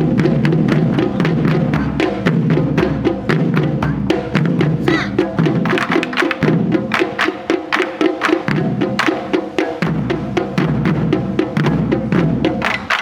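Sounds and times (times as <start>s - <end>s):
drum ensemble playing fast rhythm: 0.0s - 13.0s.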